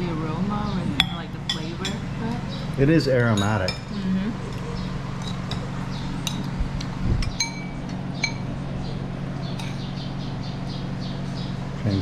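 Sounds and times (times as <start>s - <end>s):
steady low hum: 0.0s - 12.0s
utensils clinking on bowls: 3.2s - 6.6s, 7.2s - 8.6s, 9.5s - 10.1s.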